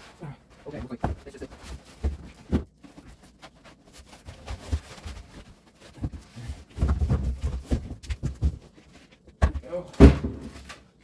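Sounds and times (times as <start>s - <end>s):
knocks and rustling scrapes: 0.0s - 11.0s.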